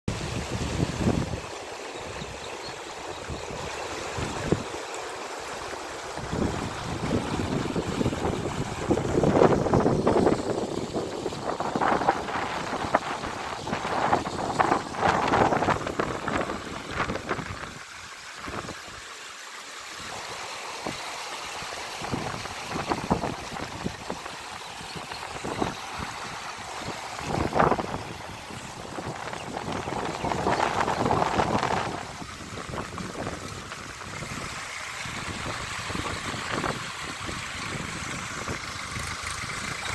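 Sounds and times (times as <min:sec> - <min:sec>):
wind buffeting microphone: 0:00.1 - 0:01.5, 0:06.2 - 0:18.8, 0:22.0 - 0:39.9
water flowing and lapping: 0:00.1 - 0:39.9.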